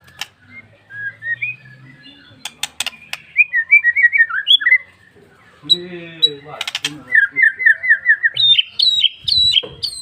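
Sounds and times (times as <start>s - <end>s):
bird chirping and twittering: 0.0s - 10.0s
sharp clicks: 2.4s - 3.3s, 6.6s - 7.0s.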